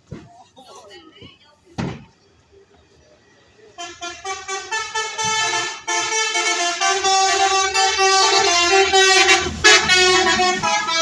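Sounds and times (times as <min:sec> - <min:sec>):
multi-tone bus horn melody: 0:03.6 - 0:11.0.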